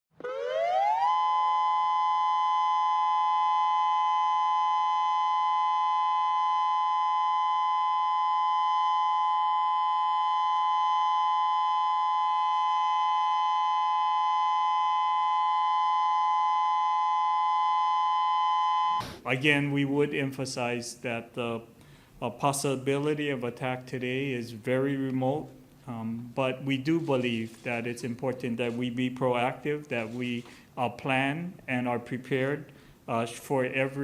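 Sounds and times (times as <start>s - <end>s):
warning siren two-note tone: 0.1s - 19.1s.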